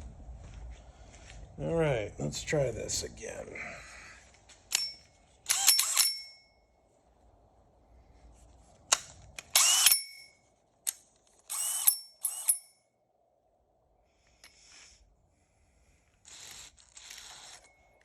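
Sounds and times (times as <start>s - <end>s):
cordless drill with hole saw: 5.5s - 6.2s, 9.4s - 10.3s, 11.4s - 12.7s, 16.2s - 18.0s.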